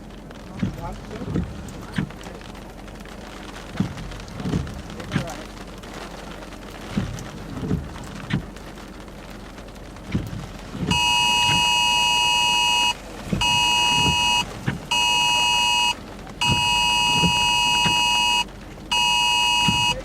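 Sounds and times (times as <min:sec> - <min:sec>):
phone emergency alert beeps: 0:10.9 - 0:20.0.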